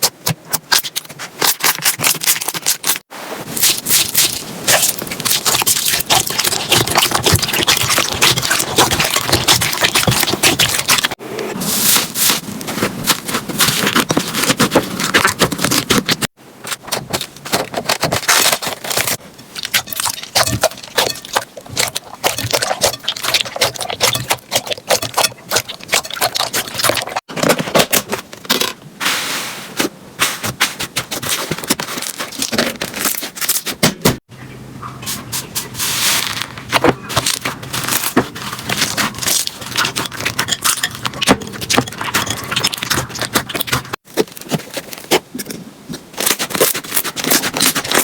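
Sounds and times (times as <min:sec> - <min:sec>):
slime squished by hand: 0:03.6 - 0:11.2.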